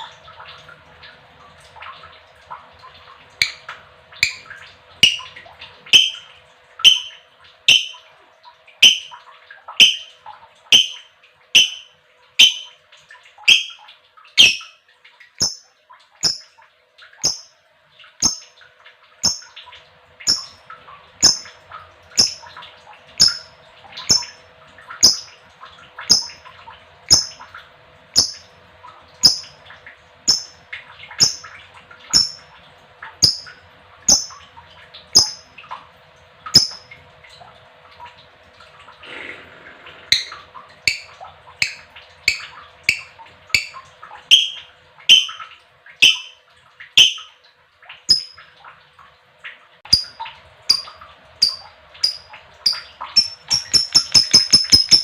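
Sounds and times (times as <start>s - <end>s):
low steady hum: 0.0s - 55.0s
bird giving shrill calls: 6.0s - 6.2s, 6.8s - 7.1s, 11.6s - 12.8s, 13.5s - 13.8s, 14.4s - 14.7s.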